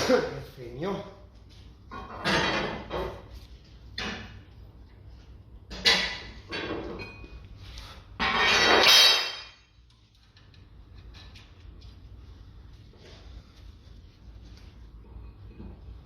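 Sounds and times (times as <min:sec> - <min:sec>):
tools clanking on metal parts: 0:08.2 - 0:09.7.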